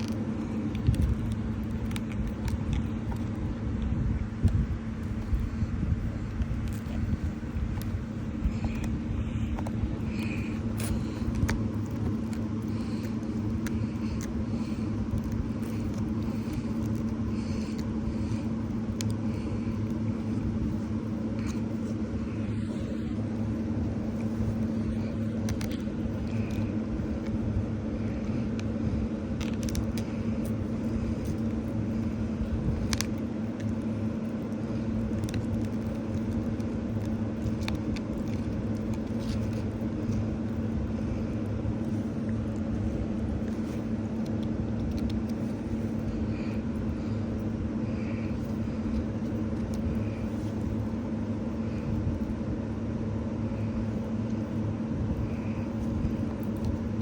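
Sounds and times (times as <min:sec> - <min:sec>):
low mechanical hum: 0:00.0 - 0:57.0.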